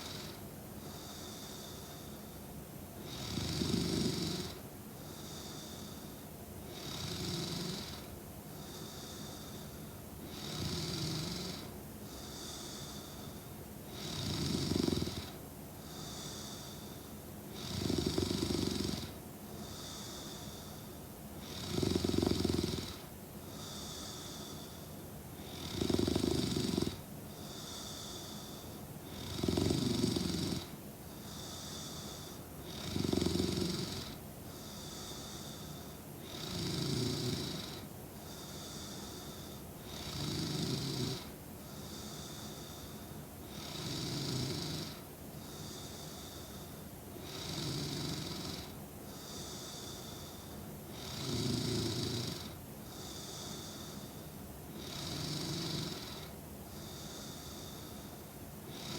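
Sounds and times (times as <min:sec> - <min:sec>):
soft breathing: 0:00.0 - 0:02.6, 0:04.5 - 0:06.4, 0:07.9 - 0:10.1, 0:11.2 - 0:13.7, 0:15.3 - 0:17.3, 0:19.1 - 0:21.2, 0:22.9 - 0:25.6, 0:26.9 - 0:29.4, 0:30.6 - 0:32.7, 0:33.8 - 0:36.3, 0:37.4 - 0:40.1, 0:41.1 - 0:43.9, 0:44.5 - 0:51.2, 0:52.1 - 0:58.9
woman snoring: 0:03.1 - 0:04.6, 0:06.7 - 0:08.1, 0:10.3 - 0:13.1, 0:13.9 - 0:15.4, 0:17.6 - 0:20.3, 0:21.4 - 0:24.7, 0:25.4 - 0:30.7, 0:31.3 - 0:58.1, 0:58.7 - 0:58.9.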